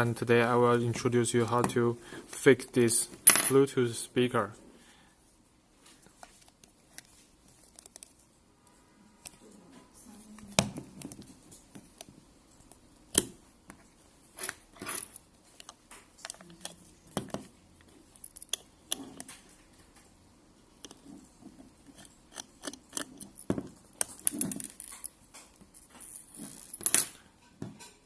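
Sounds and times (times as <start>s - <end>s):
clicks and taps handling plastic: 10.4s - 13.9s.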